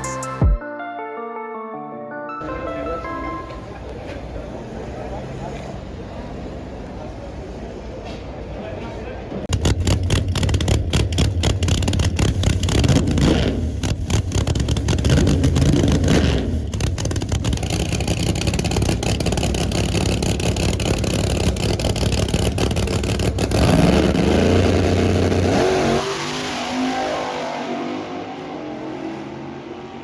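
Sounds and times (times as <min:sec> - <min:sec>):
drag race car engine revving: 0:09.5 - 0:30.0.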